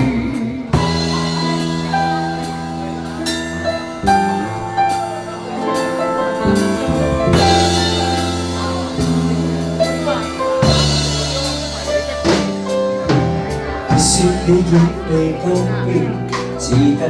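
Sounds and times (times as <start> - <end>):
drum beat with cymbals: 0.0 - 17.0
sustained bass and chords: 0.0 - 17.0.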